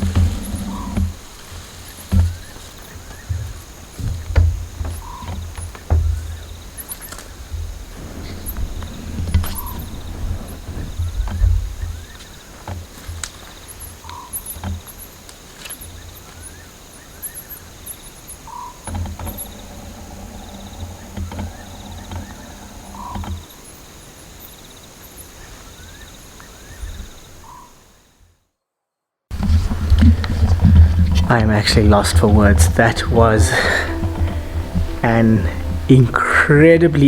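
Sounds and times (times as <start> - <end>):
frogs calling: 0.0 - 28.1, 29.3 - 37.0
insects trilling: 0.0 - 28.2, 29.3 - 37.0
low knocks: 29.3 - 37.0
low steady hum: 29.3 - 37.0.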